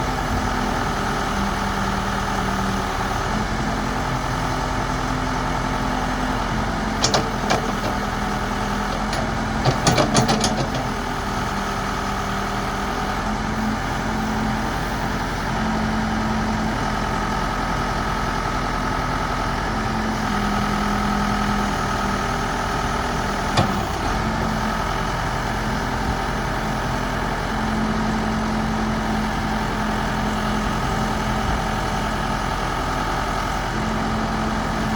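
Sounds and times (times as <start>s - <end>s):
diesel engine idling: 0.0s - 34.9s
sharp clicks or knocks: 7.0s - 8.1s, 8.9s - 10.9s.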